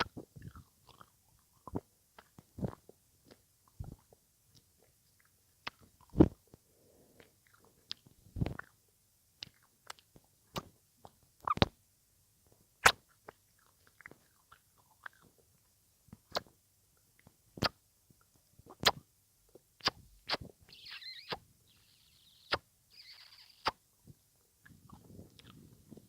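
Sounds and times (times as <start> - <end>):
wet mouth clicks and smacks: 0.0 - 6.3, 9.4 - 11.7, 12.8 - 15.4, 16.1 - 16.5, 18.7 - 19.0.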